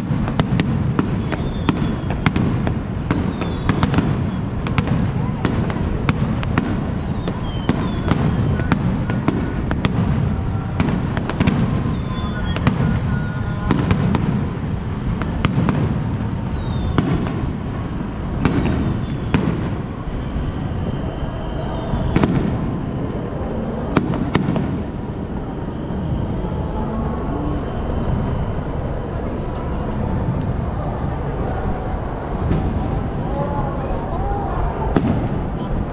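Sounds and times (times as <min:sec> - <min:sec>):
fireworks bangs and crackles: 0:00.0 - 0:35.9
falling whistles: 0:00.9 - 0:04.5, 0:06.5 - 0:09.5, 0:10.8 - 0:14.0, 0:16.3 - 0:29.2
low rumble: 0:08.1 - 0:35.9.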